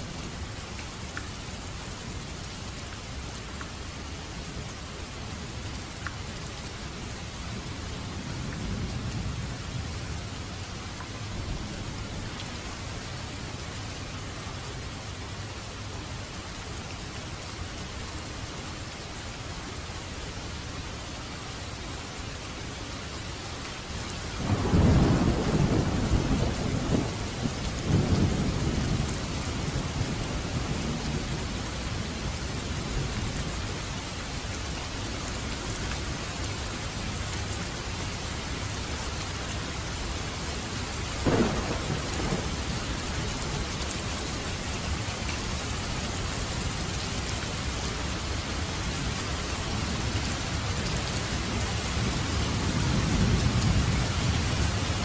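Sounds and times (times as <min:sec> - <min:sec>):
rain hissing: 0:06.8 - 0:55.0
thunder rumbling: 0:24.4 - 0:32.2, 0:41.2 - 0:45.0
sharp thunderclap: 0:41.2 - 0:42.7.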